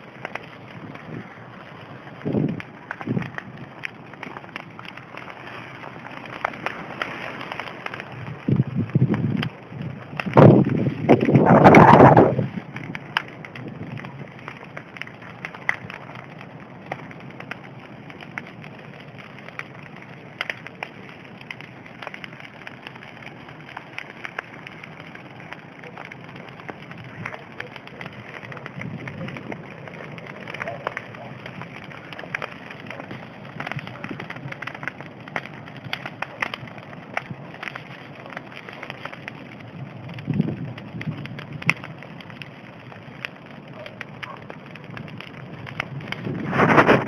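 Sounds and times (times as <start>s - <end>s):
low rumble: 0.0s - 20.3s
bonfire hissing: 0.0s - 47.0s
burning wood crackling and popping: 0.0s - 47.0s.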